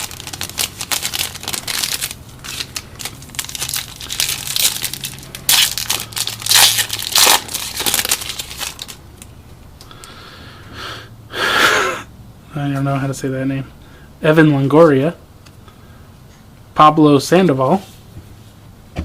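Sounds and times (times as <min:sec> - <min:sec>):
foil wrapper crinkling and tearing: 0:00.0 - 0:09.0.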